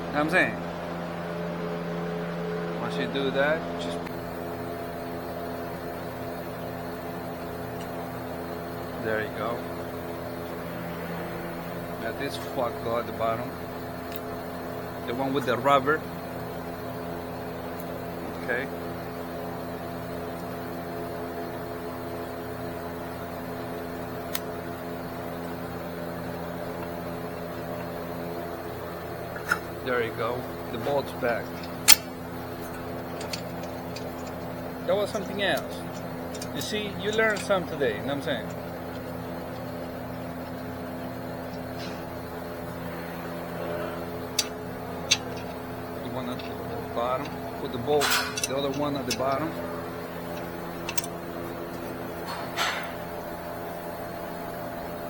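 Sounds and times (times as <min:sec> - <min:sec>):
machine hum: 0:00.0 - 0:55.0
motor running: 0:00.0 - 0:55.0
sharp click: 0:31.5 - 0:34.5.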